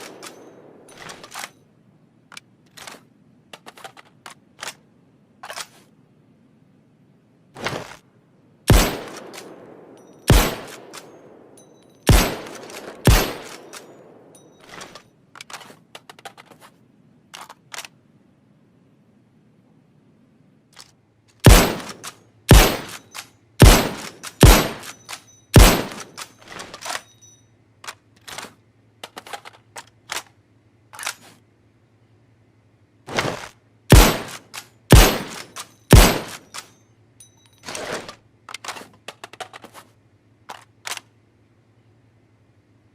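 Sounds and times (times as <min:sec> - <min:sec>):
rifle shots: 0:00.0 - 0:01.5, 0:08.7 - 0:15.0, 0:21.4 - 0:26.6, 0:33.1 - 0:36.6
rifle bolt clicks and clacks: 0:00.0 - 0:01.6, 0:02.2 - 0:06.0, 0:08.7 - 0:18.1, 0:20.7 - 0:31.4, 0:33.9 - 0:41.2.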